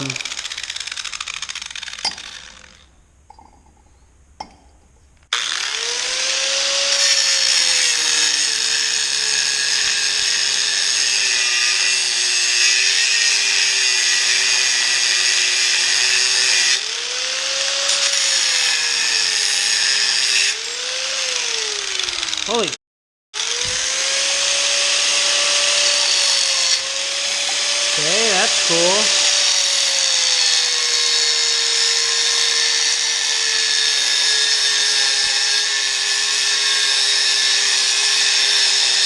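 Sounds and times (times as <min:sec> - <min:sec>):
power tool cutting steel: 0:00.0 - 0:02.9, 0:05.3 - 0:22.8, 0:23.4 - 0:39.0.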